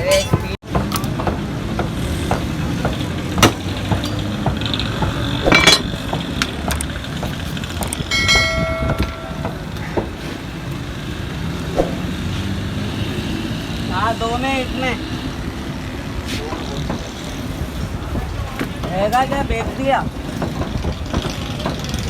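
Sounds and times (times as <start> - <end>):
busy street traffic rumble: 0.0 - 22.0
sharp knocks: 7.8 - 10.2.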